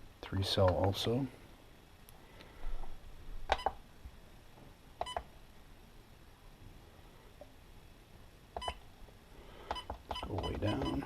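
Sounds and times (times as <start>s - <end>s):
battery charger beeping: 9.7s - 11.0s.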